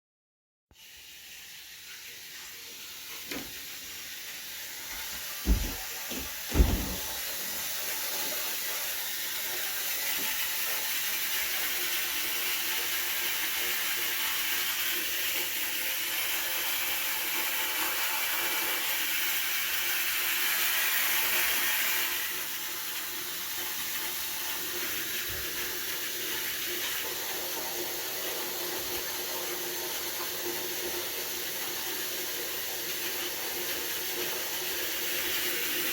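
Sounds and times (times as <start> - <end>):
water rushing hiss through valve: 0.7 - 35.9
dull thumps: 5.4 - 7.2.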